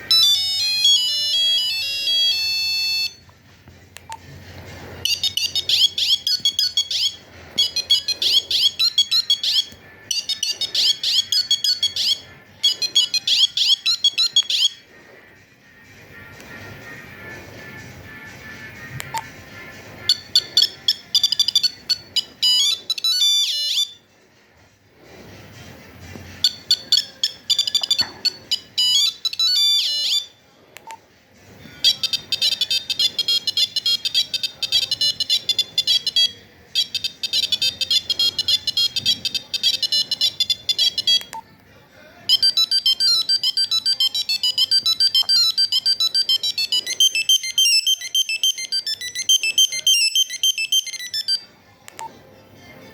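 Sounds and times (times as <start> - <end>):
mobile phone ringtone beeping: 0.0 - 3.2, 5.0 - 14.8, 20.0 - 24.0, 26.3 - 30.3, 31.8 - 41.4, 42.3 - 52.2.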